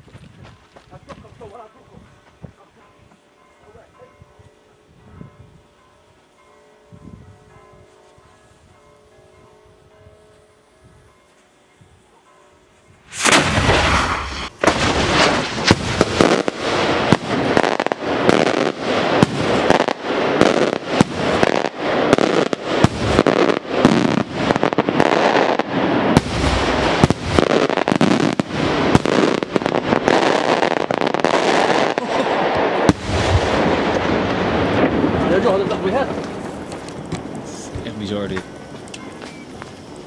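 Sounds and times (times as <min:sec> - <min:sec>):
fireworks banging and crackling: 0:13.0 - 0:40.0.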